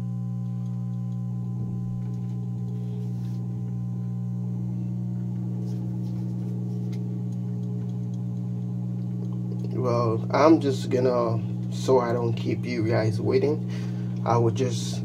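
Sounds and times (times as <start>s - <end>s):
hot-air station blowing: 9.6s - 15.0s.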